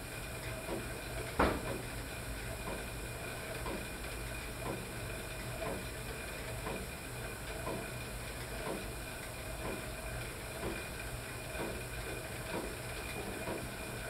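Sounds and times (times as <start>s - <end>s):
faint tick: 2.7s - 2.9s, 4.6s - 4.8s, 7.5s - 7.9s, 8.6s - 8.9s, 9.6s - 9.8s, 11.6s - 11.8s.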